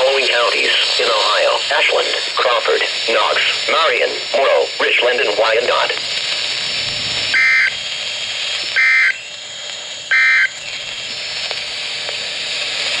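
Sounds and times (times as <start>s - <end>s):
radio hiss: 0.0s - 13.0s
two-tone digital data bursts: 7.3s - 7.8s, 8.7s - 9.4s, 10.1s - 10.6s.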